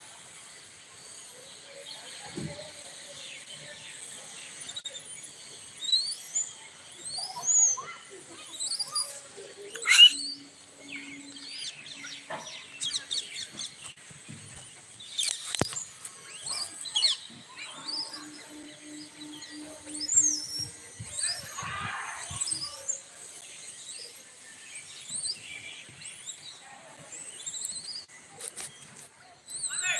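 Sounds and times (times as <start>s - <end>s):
monkeys squealing: 7.0s - 10.5s.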